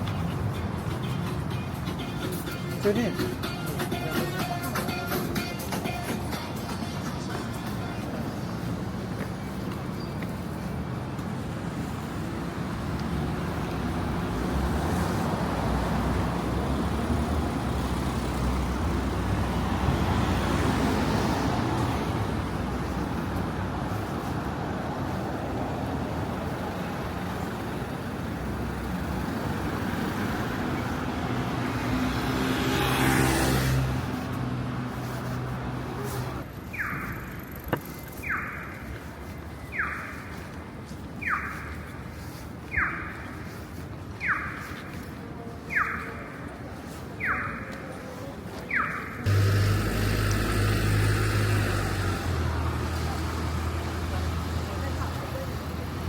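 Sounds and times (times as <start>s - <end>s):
street traffic engine hum: 0.0s - 56.0s.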